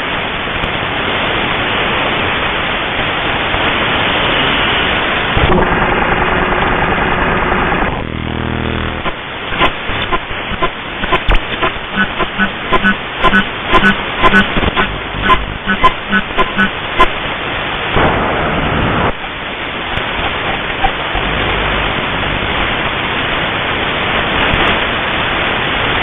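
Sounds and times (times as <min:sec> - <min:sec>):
radio static hiss: 0:04.2 - 0:26.0
short buzz: 0:07.9 - 0:17.1
sharp clicks and pops: 0:08.9 - 0:17.1
steady whistle tone: 0:12.0 - 0:17.1.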